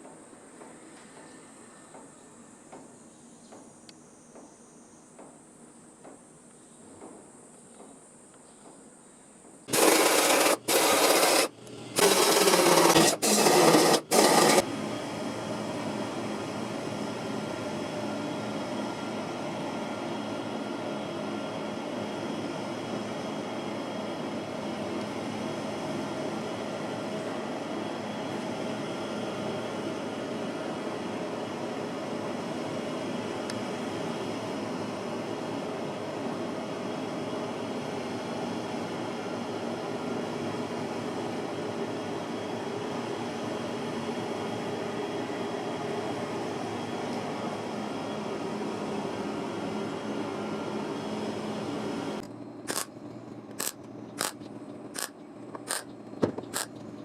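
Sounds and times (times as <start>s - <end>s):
grinding or sanding noise: 9.7s - 14.6s, 52.7s - 52.9s, 53.6s - 54.4s
power tool bursts on steel: 9.7s - 14.6s, 52.7s - 52.9s, 53.6s - 54.4s, 55.0s - 55.9s, 56.5s - 56.7s.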